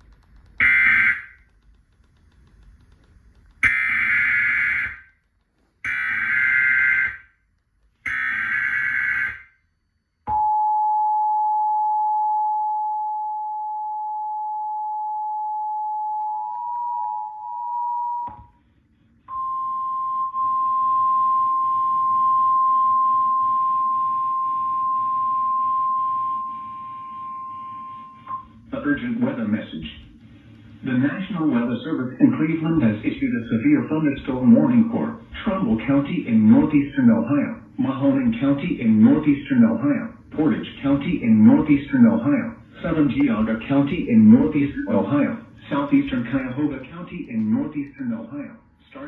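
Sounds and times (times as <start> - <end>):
two-tone alert signal: 10.3 - 18.5, 19.3 - 28.6.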